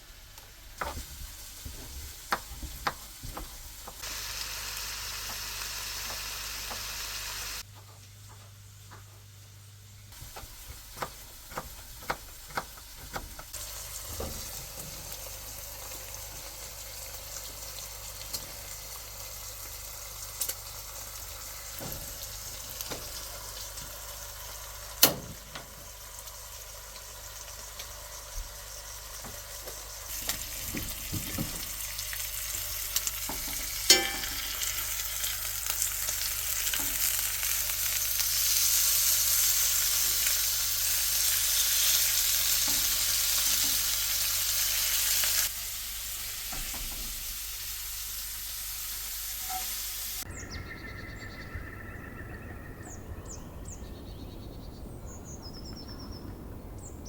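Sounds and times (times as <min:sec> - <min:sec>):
food sizzling in a pan: 0:00.0 - 0:07.7, 0:10.1 - 0:50.3
sharp clink: 0:33.9 - 0:34.6
birds chirping: 0:50.2 - 0:57.0.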